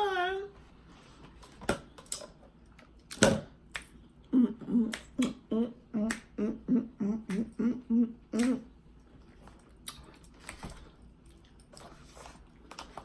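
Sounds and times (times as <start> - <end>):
wet mouth clicks and smacks: 9.7 - 10.7.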